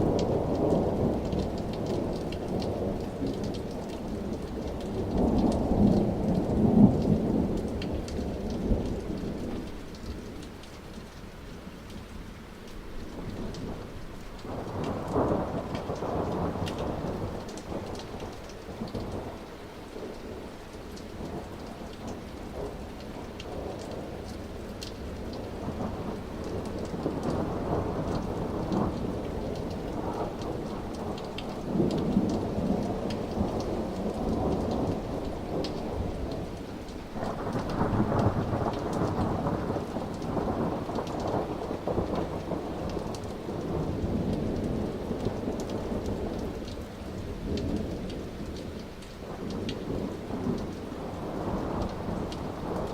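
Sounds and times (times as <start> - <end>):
raindrops ticking: 0.0 - 52.9
steady rain: 0.0 - 52.9
rolling thunder: 13.1 - 19.4, 21.2 - 46.6, 49.2 - 52.9.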